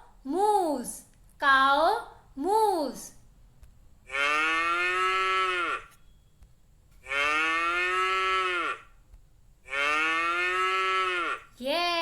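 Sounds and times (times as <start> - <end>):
cow mooing: 4.1 - 5.9, 7.1 - 8.9, 9.7 - 11.5.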